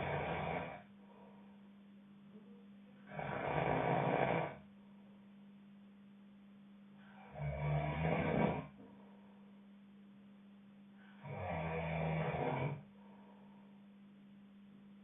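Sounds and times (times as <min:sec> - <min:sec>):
person snoring: 0:00.0 - 0:00.9, 0:03.0 - 0:04.7, 0:07.1 - 0:08.8, 0:11.1 - 0:13.0
steady low hum: 0:00.0 - 0:15.0.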